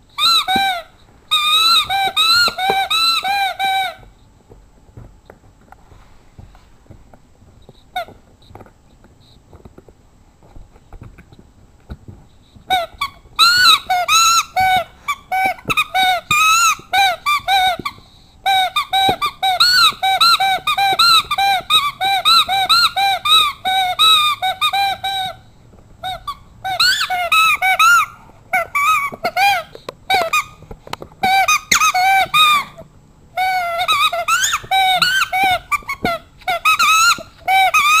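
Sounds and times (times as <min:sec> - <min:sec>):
rubber squeaky toy squeaking: 0:00.1 - 0:04.1, 0:07.7 - 0:08.2, 0:12.6 - 0:25.4, 0:26.0 - 0:38.0.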